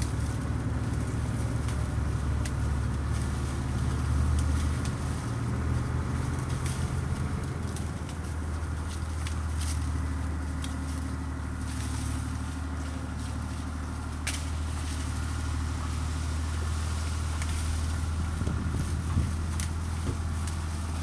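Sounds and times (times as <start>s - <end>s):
engine idling: 0.0s - 21.0s.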